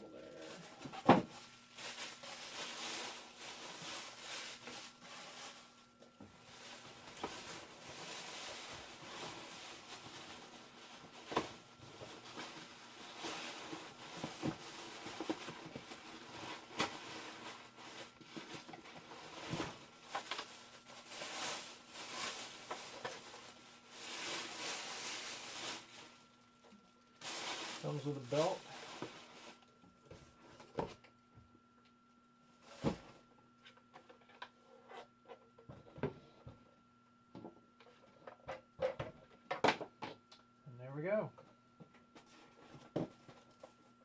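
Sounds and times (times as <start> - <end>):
packaging rustling and crinkling: 0.4 - 29.7.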